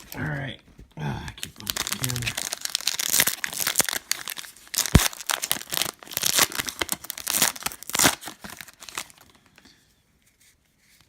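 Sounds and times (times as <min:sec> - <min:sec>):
card wrapper tearing and crinkling: 0:00.0 - 0:00.3, 0:01.4 - 0:09.3.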